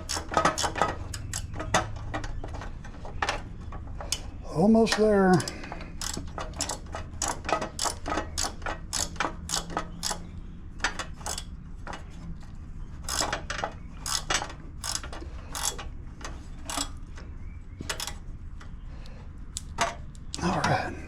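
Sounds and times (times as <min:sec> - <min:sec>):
ratchet wrench clicking: 0:00.0 - 0:01.6, 0:05.3 - 0:10.3, 0:10.9 - 0:11.5, 0:13.0 - 0:17.1, 0:17.8 - 0:18.2.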